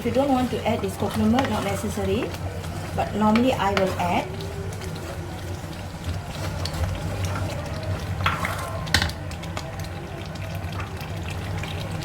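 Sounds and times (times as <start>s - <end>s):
metal spatula scraping a pan: 0.0s - 5.2s, 6.3s - 9.1s.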